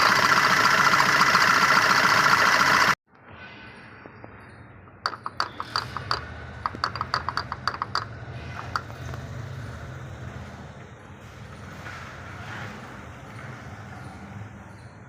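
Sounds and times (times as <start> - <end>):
car engine running: 0.0 - 3.0.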